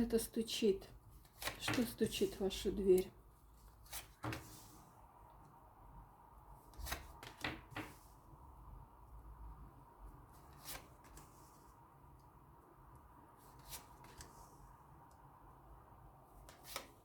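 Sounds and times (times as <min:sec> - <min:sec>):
cards tapping and rustling: 0:03.9 - 0:04.6, 0:06.8 - 0:08.0.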